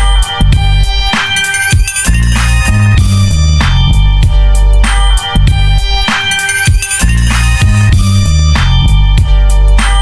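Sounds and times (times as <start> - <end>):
loud music with heavy bass: 0.0 - 10.0.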